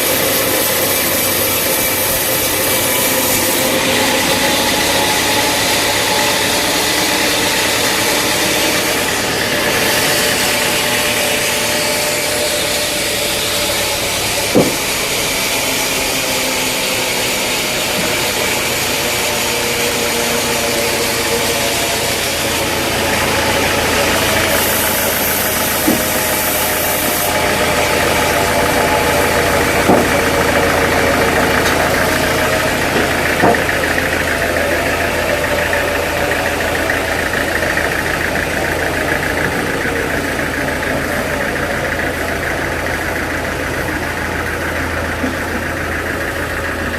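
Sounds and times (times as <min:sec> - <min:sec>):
sawmill machinery droning: 0:00.0 - 0:46.9
sharp knocks: 0:14.3 - 0:15.5, 0:23.5 - 0:36.1.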